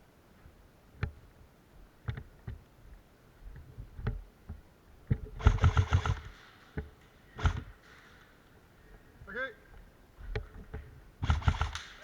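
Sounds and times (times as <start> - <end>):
airsoft gun motor whining: 5.4 - 6.3, 7.4 - 7.7, 11.2 - 12.0
airsoft gun firing burst: 5.4 - 6.8, 7.4 - 8.0, 11.2 - 12.0.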